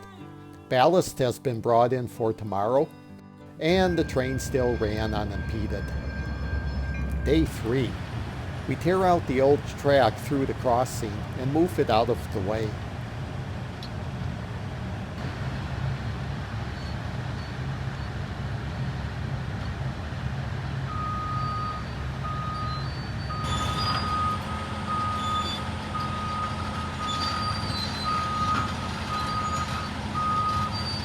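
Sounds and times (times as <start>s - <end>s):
backup alarm beeping: 3.6s - 12.7s
heavy machinery engines running: 3.6s - 31.0s.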